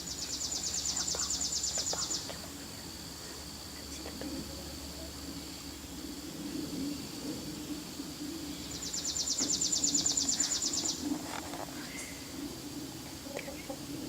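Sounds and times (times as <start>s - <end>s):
insects droning: 0.0s - 14.0s
songbird high trill: 8.5s - 11.2s.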